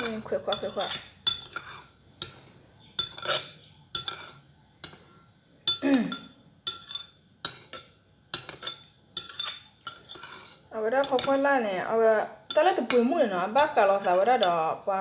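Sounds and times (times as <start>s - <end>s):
utensils clinking against a pot: 0.0s - 11.8s, 12.4s - 14.9s.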